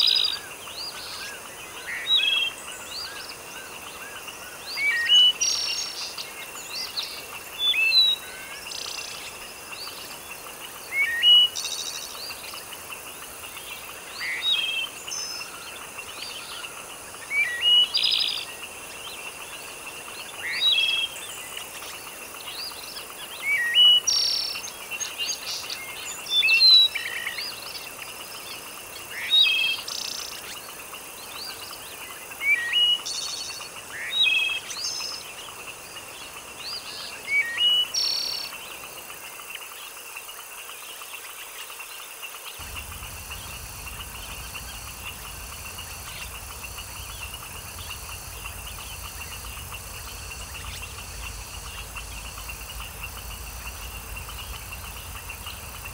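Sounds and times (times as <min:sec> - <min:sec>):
background hiss: 0:00.0 - 0:55.9
birds chirping: 0:00.0 - 0:55.9
thin high drone: 0:42.6 - 0:55.9.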